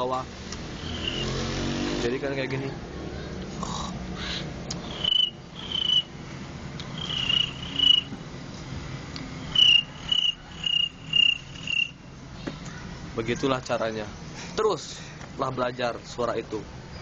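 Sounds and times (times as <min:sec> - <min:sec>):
vocal cricket chirp imitation: 0:00.7 - 0:01.5, 0:03.6 - 0:06.2, 0:06.8 - 0:08.1, 0:09.5 - 0:12.1.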